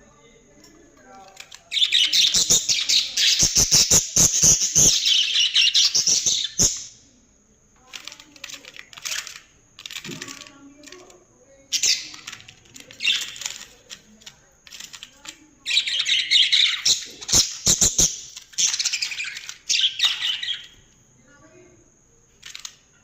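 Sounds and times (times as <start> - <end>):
budgerigars chattering and chirping: 1.7 - 6.9, 15.7 - 20.8
sharp clicks: 7.8 - 11.2, 11.9 - 15.4, 22.3 - 22.9.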